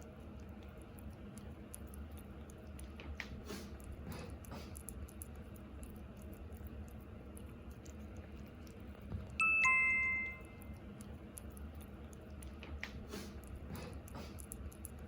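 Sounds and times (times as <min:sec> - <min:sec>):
two-note chime: 0:09.4 - 0:10.6.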